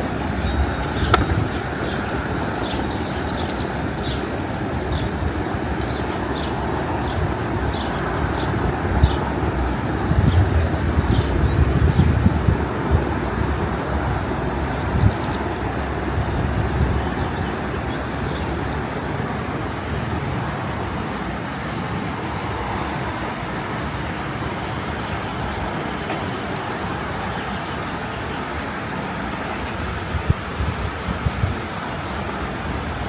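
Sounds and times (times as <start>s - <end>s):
bird chirps: 0.0s - 9.2s, 17.3s - 19.0s
steady rushing noise: 0.0s - 33.0s.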